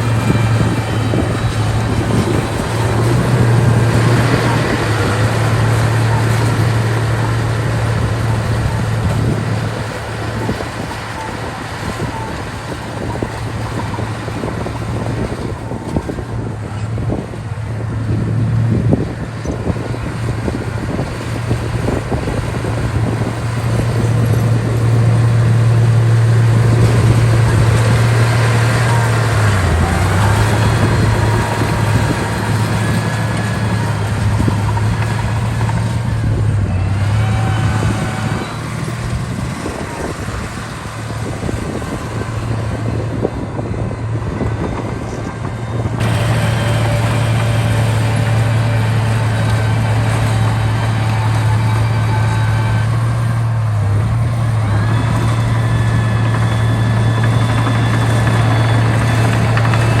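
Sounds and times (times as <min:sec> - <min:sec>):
heavy diesel engine droning: 0:00.0 - 1:00.0.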